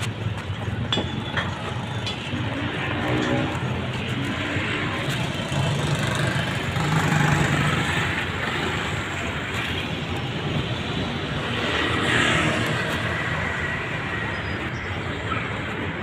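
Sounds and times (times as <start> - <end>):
vehicles passing: 0.0 - 16.0.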